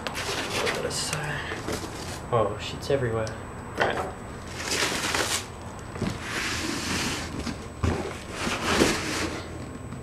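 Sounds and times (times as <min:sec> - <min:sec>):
box packaging rustling: 0:04.4 - 0:09.4.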